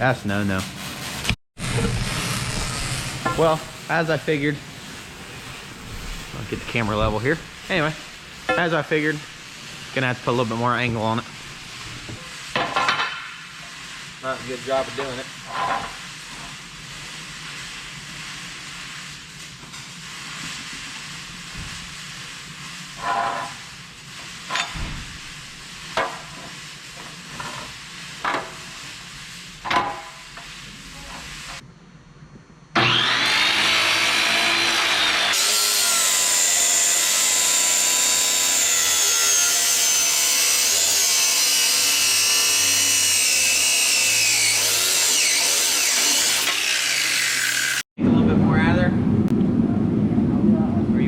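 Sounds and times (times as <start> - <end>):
power tool cutting metal tubing: 1.6 - 13.5, 32.8 - 47.8.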